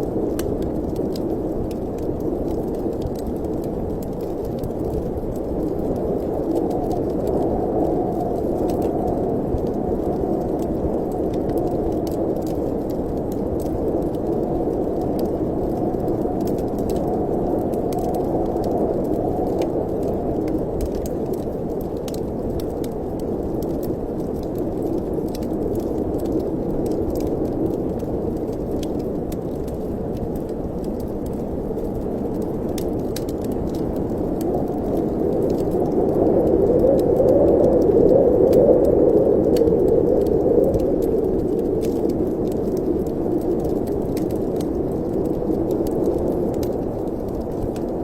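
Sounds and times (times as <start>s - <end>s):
wood fire crackling: 0.0s - 48.0s
wind blowing: 32.0s - 48.0s.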